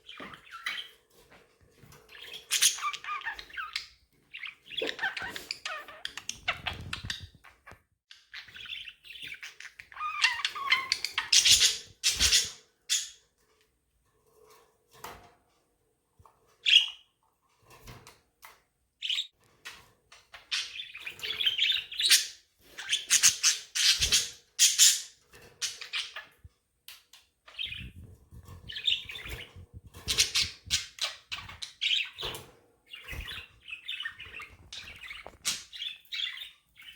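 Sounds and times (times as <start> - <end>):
budgerigars chirping: 2.2 - 7.2, 28.7 - 36.9.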